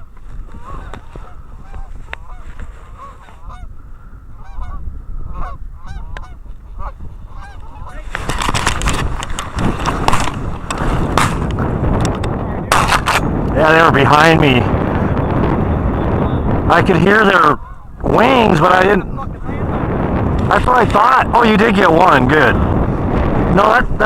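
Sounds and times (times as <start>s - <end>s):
geese honking: 0.0s - 8.1s.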